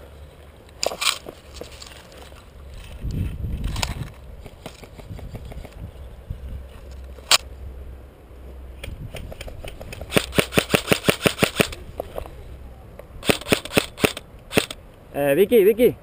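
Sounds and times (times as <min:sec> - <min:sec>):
airsoft rifle firing bursts: 0:09.4 - 0:11.8, 0:13.2 - 0:14.8.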